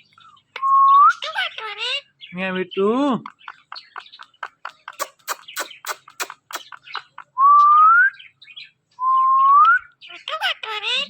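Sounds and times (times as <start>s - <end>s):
parakeet sharp clicks: 3.2s - 7.1s.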